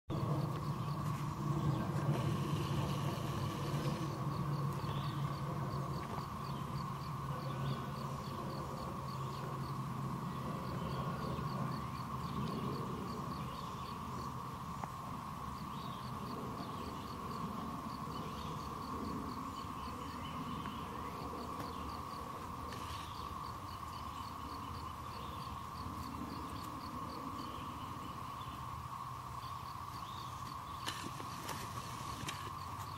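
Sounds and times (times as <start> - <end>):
low rumble: 0.1 - 15.4
birds chirping: 0.1 - 32.9
steady hum: 0.1 - 32.9.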